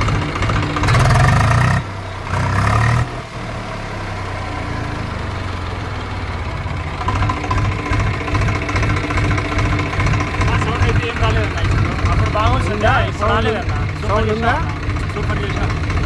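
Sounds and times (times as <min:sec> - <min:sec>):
diesel tractor engine running: 0:00.0 - 0:16.0.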